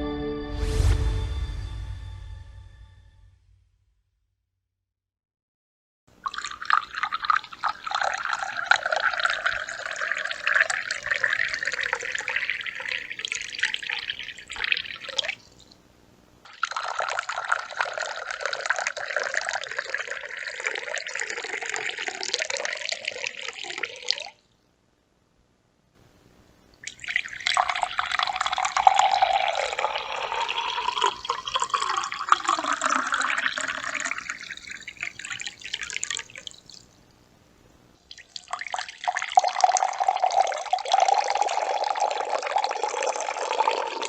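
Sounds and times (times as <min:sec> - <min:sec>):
water pouring into a glass: 0:06.2 - 0:15.8, 0:16.5 - 0:24.4, 0:26.8 - 0:37.0, 0:38.1 - 0:44.0.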